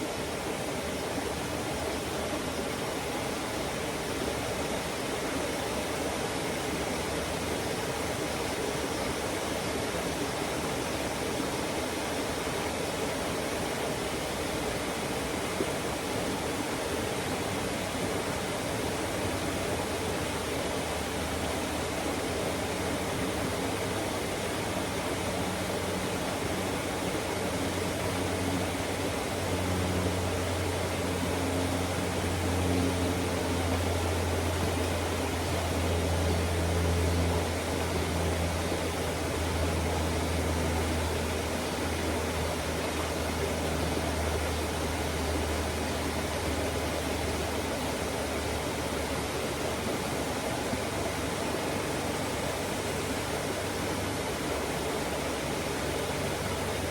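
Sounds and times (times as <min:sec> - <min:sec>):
water rushing over rocks: 0:00.0 - 0:56.9
low hum: 0:19.0 - 0:56.9.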